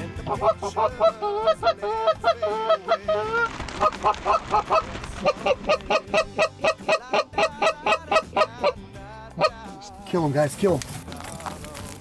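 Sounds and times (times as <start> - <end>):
geese honking: 0.0 - 8.8, 9.4 - 9.8.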